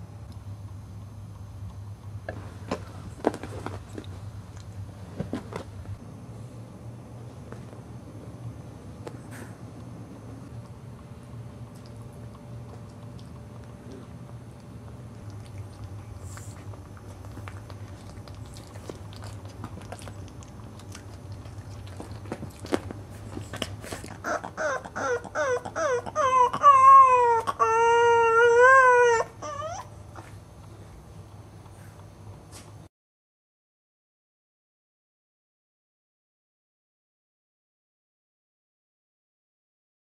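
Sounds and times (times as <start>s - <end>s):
dog whimpering: 24.0s - 30.3s.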